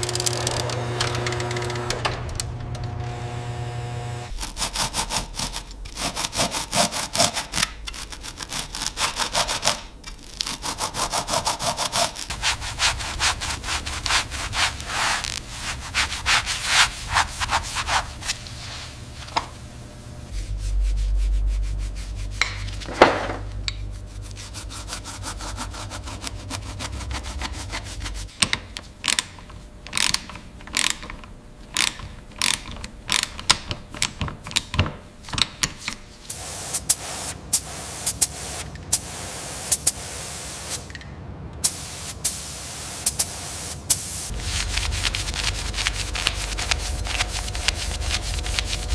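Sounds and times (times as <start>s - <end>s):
low hum: 0.0s - 4.4s, 12.3s - 28.3s
hand sanding strokes: 10.5s - 19.3s, 20.3s - 22.9s, 23.8s - 28.4s, 41.9s - 48.9s.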